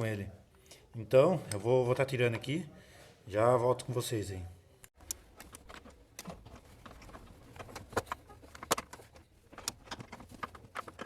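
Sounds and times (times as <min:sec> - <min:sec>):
hand tools clicking and knocking: 0:05.0 - 0:11.0.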